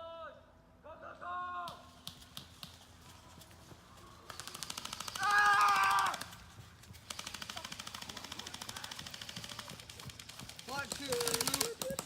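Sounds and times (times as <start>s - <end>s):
airsoft guns firing bursts: 4.2s - 12.0s.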